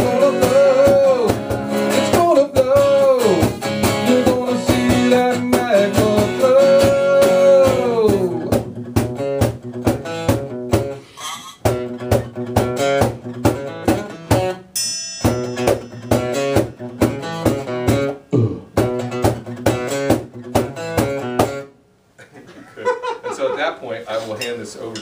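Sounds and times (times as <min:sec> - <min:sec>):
band guitars strumming chords: 0:00.0 - 0:11.0, 0:11.6 - 0:21.7.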